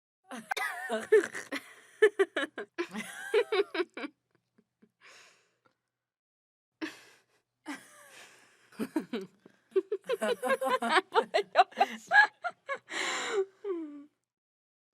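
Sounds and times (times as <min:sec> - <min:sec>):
women laughing: 0:00.3 - 0:04.1, 0:07.7 - 0:13.0
woman gasping: 0:12.9 - 0:14.1.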